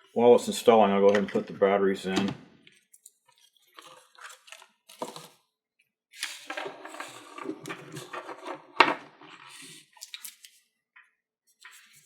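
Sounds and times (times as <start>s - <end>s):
plastic rattling and rubbing: 6.2s - 10.5s.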